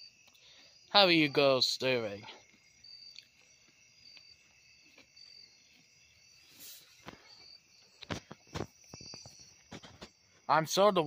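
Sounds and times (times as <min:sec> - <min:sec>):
insects chirping: 0:00.0 - 0:11.0.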